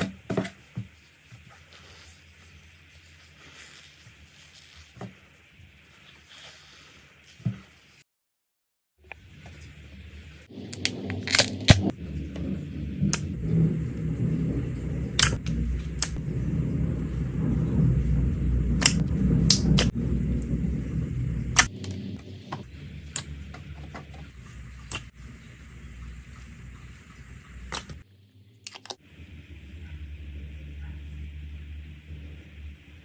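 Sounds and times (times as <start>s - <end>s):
clicks and pops of air: 10.7s - 11.9s, 15.2s - 16.2s, 18.8s - 19.9s, 27.7s - 28.0s
slime being squished: 10.7s - 11.9s.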